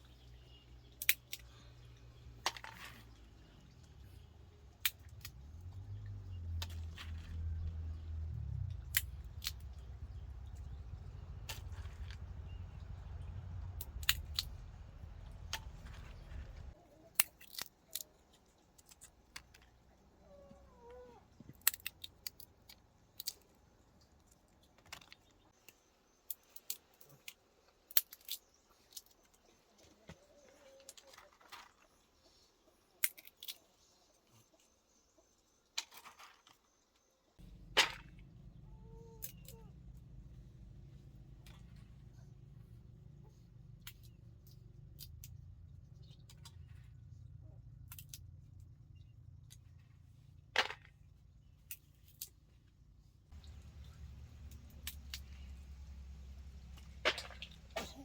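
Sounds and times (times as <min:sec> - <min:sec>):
low hum: 0:03.5 - 0:16.8, 0:53.4 - 0:58.0.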